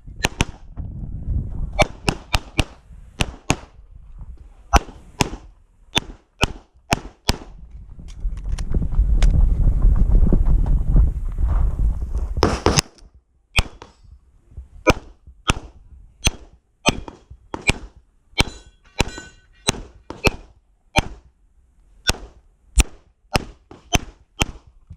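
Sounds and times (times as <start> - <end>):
handgun shots: 0.2 - 0.6, 1.8 - 3.7, 4.7 - 5.4, 6.0 - 7.5, 13.6 - 13.9, 14.9 - 21.2, 22.1 - 24.6.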